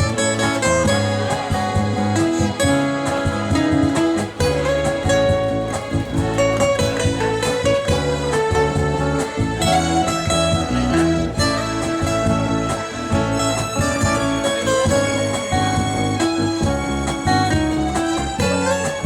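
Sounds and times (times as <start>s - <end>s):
instrumental pop ballad: 0.0s - 19.0s.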